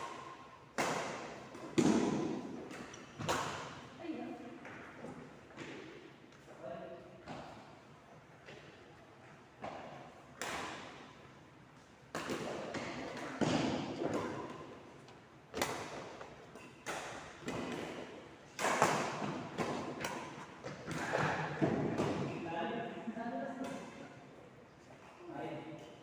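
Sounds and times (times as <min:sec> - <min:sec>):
ball hits echoing in hall: 0:00.0 - 0:04.0, 0:07.2 - 0:07.8, 0:09.6 - 0:22.8.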